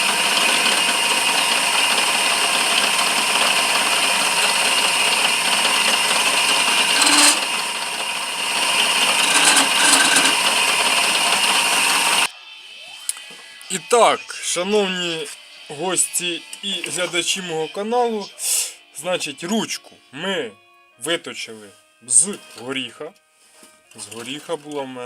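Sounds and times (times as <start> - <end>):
lathe cutting wood: 0.0 - 12.3.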